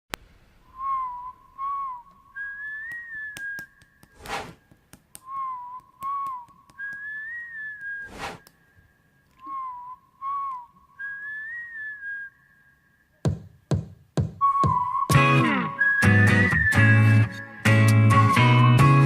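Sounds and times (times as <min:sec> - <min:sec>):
whistled tune: 0:00.7 - 0:03.9, 0:05.2 - 0:13.2, 0:14.4 - 0:19.0
whoosh: 0:04.2 - 0:04.6, 0:08.0 - 0:08.4.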